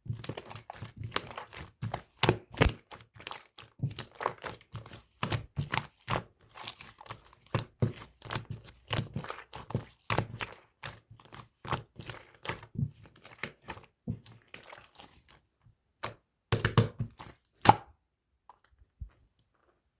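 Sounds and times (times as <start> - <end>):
slime squished by hand: 0.2 - 15.1
loud slime pop: 2.6 - 2.8, 16.5 - 17.0, 17.6 - 17.9.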